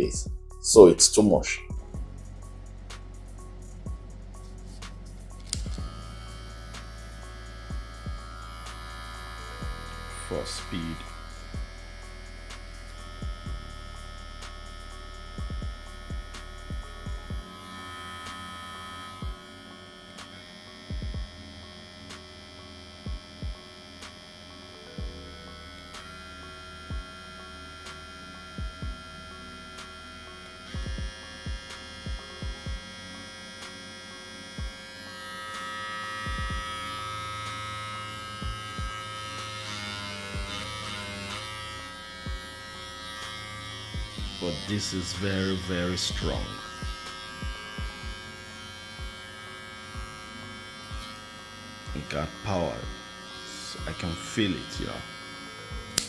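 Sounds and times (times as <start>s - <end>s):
hair clipper motor humming: 0.0s - 56.0s.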